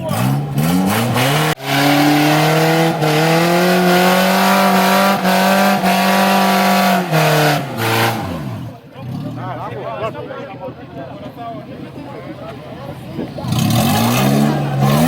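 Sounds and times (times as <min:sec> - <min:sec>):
off-road vehicle engine revving: 0:00.0 - 0:09.9, 0:12.9 - 0:15.0.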